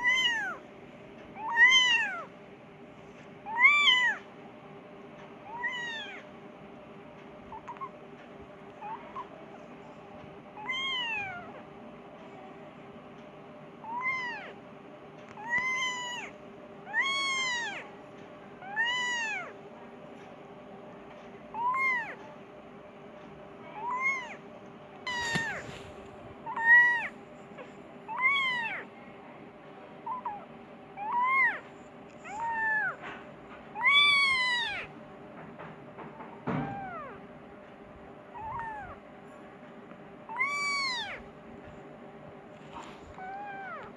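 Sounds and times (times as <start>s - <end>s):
kitten meowing: 1.4s - 2.3s, 3.5s - 4.2s, 5.5s - 6.2s, 7.5s - 7.9s, 10.6s - 11.6s, 13.8s - 14.6s, 15.4s - 16.3s, 16.9s - 17.8s, 18.6s - 19.5s, 21.6s - 22.2s, 23.8s - 24.4s, 25.1s - 27.1s, 28.1s - 28.9s, 31.0s - 33.0s, 33.8s - 34.9s, 36.6s - 37.2s, 38.4s - 39.0s, 40.3s - 41.2s, 42.8s - 43.9s.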